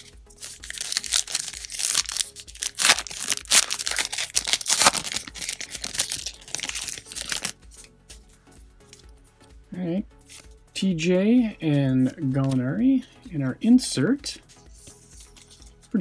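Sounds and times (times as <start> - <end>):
wrapper tearing and crinkling: 0.0 - 7.6.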